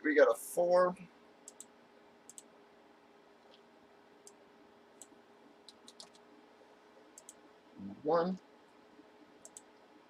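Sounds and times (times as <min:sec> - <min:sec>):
low steady hum: 0:00.0 - 0:10.0
computer mouse clicks: 0:01.4 - 0:01.7, 0:02.3 - 0:02.5, 0:05.0 - 0:06.2, 0:07.2 - 0:07.4, 0:09.4 - 0:09.8.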